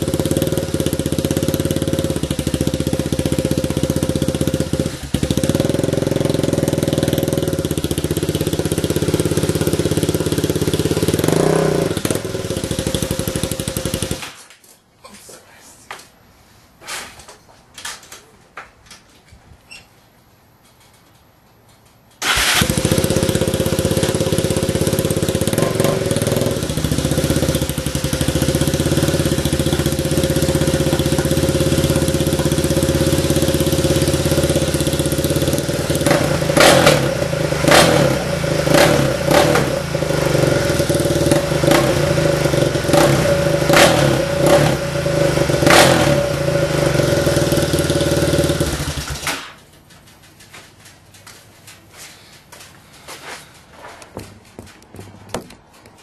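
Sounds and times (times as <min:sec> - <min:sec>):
sharp cracks: 0:20.6 - 0:37.1, 0:47.8 - 0:51.8
engine starting and idling: 0:22.2 - 0:36.0, 0:46.0 - 0:49.8.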